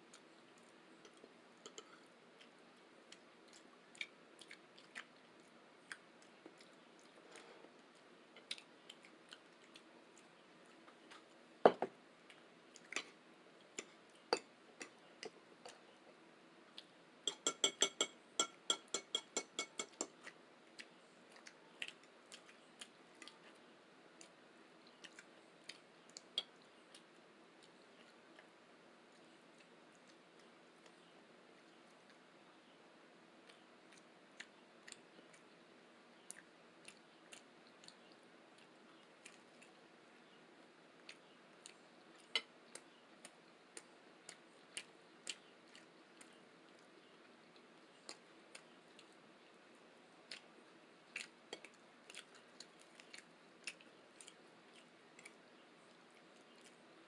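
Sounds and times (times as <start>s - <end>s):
chewing and mouth clicks: 0.1s - 11.4s, 12.2s - 16.0s, 18.7s - 28.5s, 29.1s - 31.1s, 33.4s - 35.6s, 36.2s - 40.4s, 41.0s - 57.0s
ringing taps on a plate: 17.3s - 20.1s.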